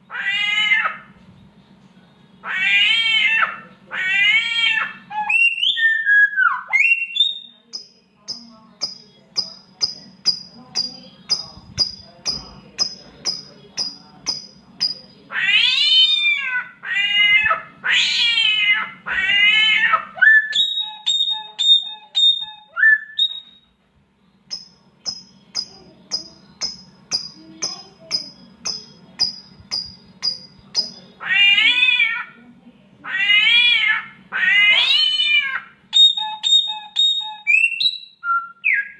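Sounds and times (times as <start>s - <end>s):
bird meow-like caterwauls: 31.2s - 32.3s, 33.0s - 35.7s.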